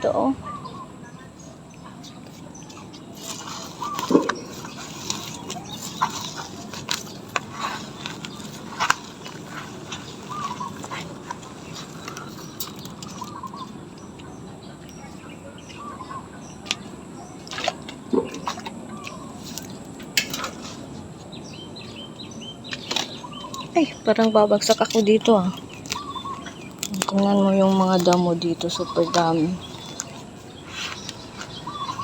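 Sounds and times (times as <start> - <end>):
faint bird chirps: 0.0 - 32.0
handling rustles and clicks: 1.7 - 15.8, 22.6 - 32.0.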